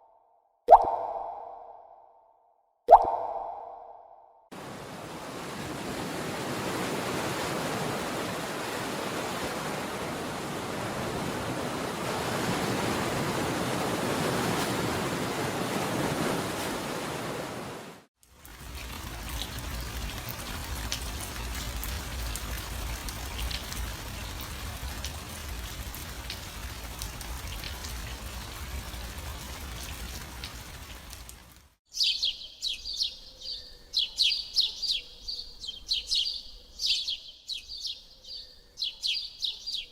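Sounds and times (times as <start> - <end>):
surf-like waves rushing: 4.6 - 18.1.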